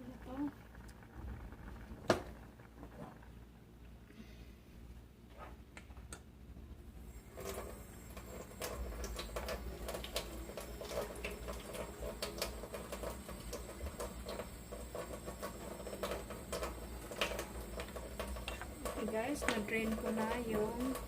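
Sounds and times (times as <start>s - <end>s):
water running off: 7.0s - 21.0s.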